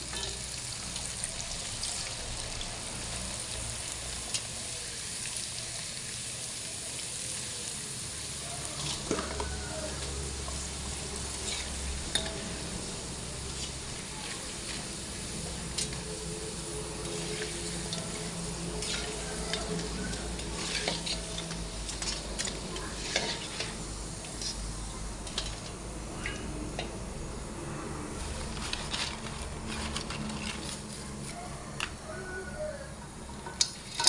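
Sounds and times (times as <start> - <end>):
food sizzling in a pan: 0.0 - 26.8
utensil scraping a pan: 8.8 - 16.2, 16.8 - 25.6.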